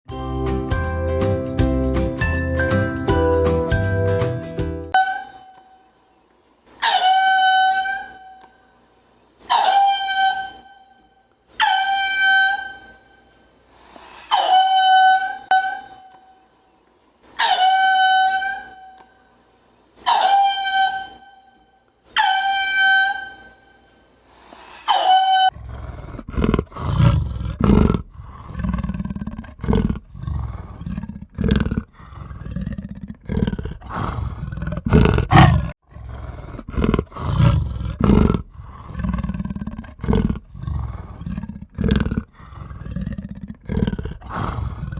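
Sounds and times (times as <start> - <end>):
high steady animal call: 26.2 - 42.8.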